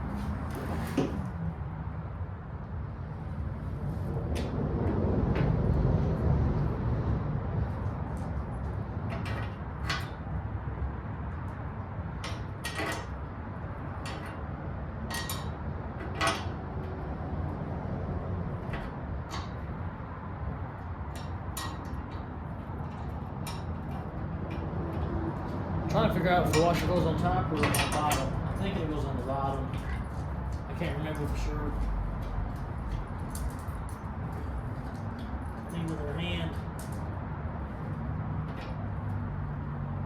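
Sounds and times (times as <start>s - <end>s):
metal tools clinking: 12.2s - 13.2s, 15.1s - 16.5s, 26.4s - 30.2s.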